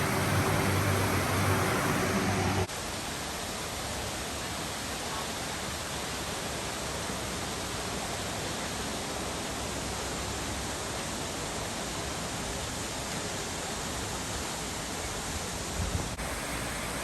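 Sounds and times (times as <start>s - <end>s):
low steady hum: 0.0s - 2.7s
waterfall roaring: 0.0s - 17.0s.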